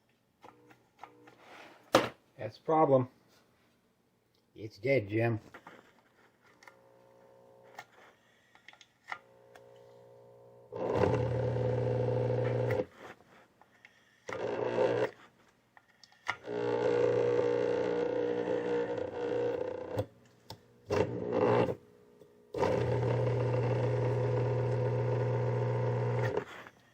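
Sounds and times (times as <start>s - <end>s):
pump motor humming: 9.1s - 12.8s, 14.3s - 15.2s, 16.4s - 20.1s, 20.9s - 21.8s, 22.5s - 26.4s.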